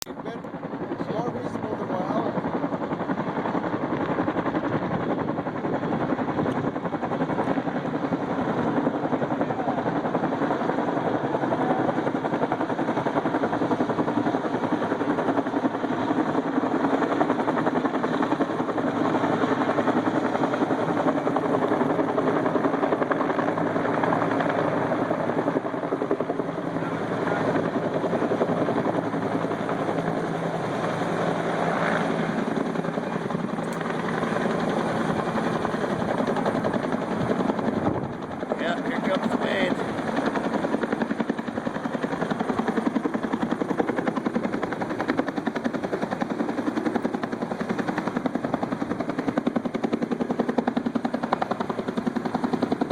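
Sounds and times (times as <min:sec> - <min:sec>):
helicopter rotor blades chopping: 0:00.0 - 0:52.9
turbine whine: 0:17.2 - 0:52.9.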